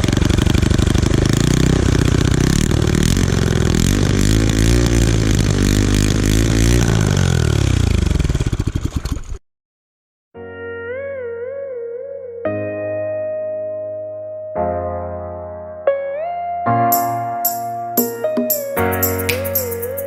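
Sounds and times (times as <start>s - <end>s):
go-kart engine revving: 0.0s - 9.4s.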